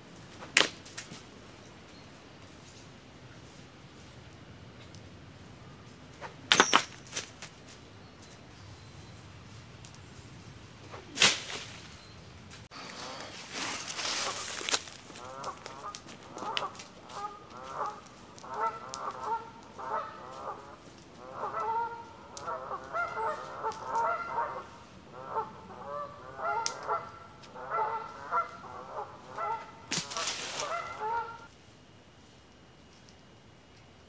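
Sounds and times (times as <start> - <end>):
geese honking: 12.7 - 31.5.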